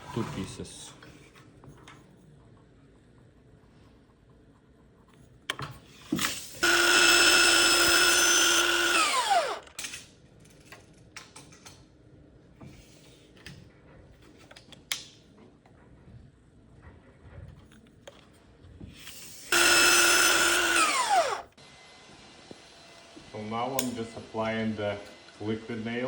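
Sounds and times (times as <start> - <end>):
miter saw motor whine: 6.6 - 9.6, 19.4 - 21.5.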